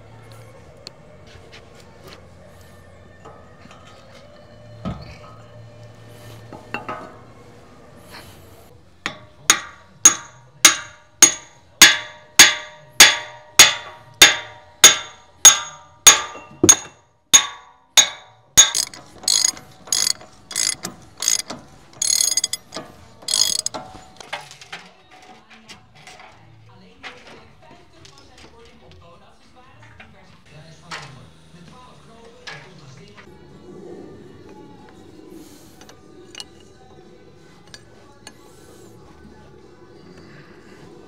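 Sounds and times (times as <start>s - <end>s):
hand tool clicking on steel: 9.1s - 24.3s.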